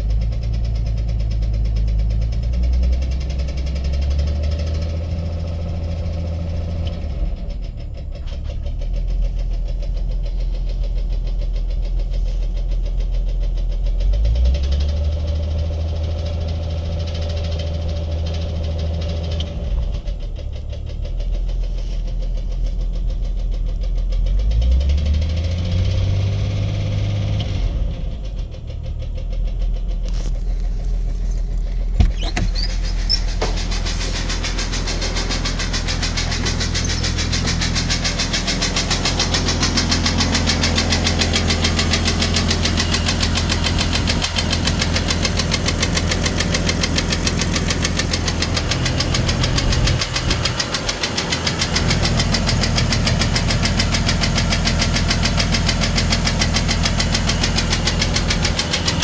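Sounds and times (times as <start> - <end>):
car engine running: 0.0 - 59.0
fast even engine tapping: 30.1 - 59.0
sharp thump: 30.3 - 38.0.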